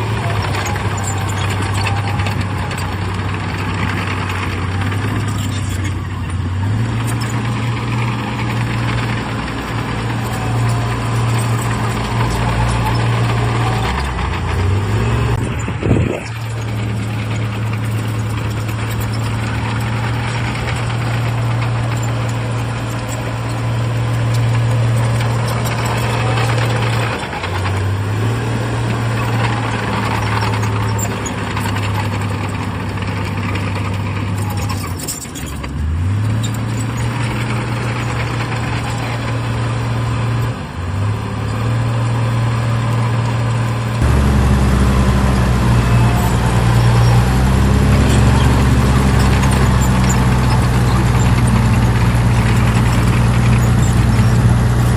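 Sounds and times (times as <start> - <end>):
diesel engine running: 0.0 - 54.9.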